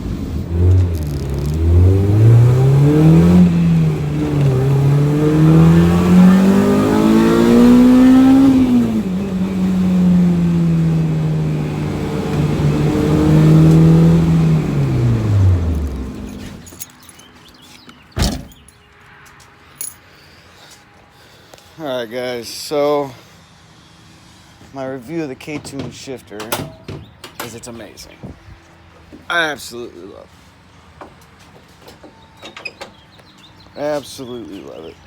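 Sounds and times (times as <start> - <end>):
car engine revving: 0.0 - 16.8.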